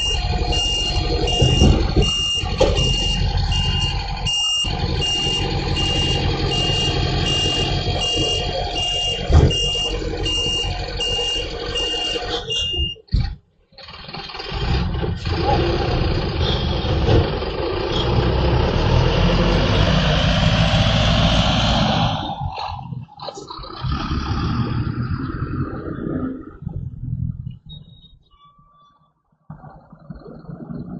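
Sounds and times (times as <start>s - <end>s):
diesel engine running: 0.0s - 13.0s, 13.8s - 25.7s
reversing beeper: 0.0s - 13.1s.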